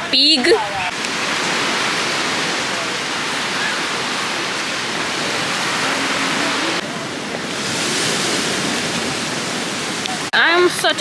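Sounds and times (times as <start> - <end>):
faint distant voices: 0.0 - 7.7
sea surf washing onto beach: 0.0 - 11.0.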